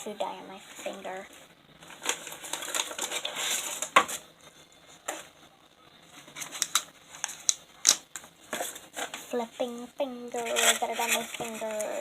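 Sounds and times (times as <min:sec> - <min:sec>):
slime rustling: 0:10.4 - 0:12.0.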